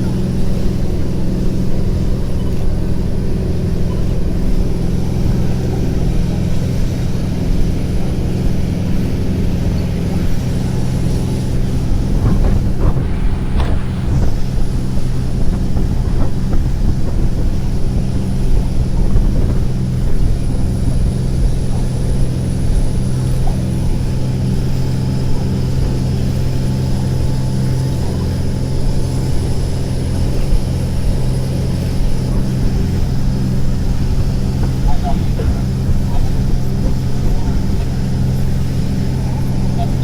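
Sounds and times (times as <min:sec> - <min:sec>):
boat engine droning: 0:00.0 - 0:40.0.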